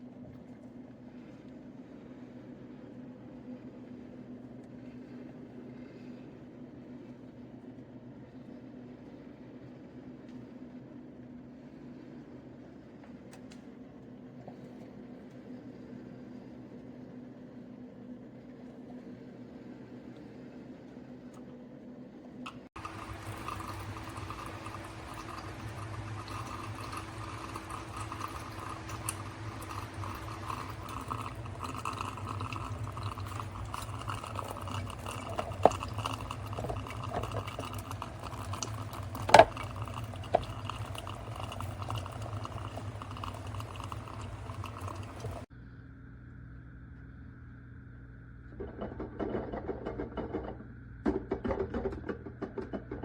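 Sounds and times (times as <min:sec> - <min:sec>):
liquid pouring and bubbling: 0:22.5 - 0:45.5.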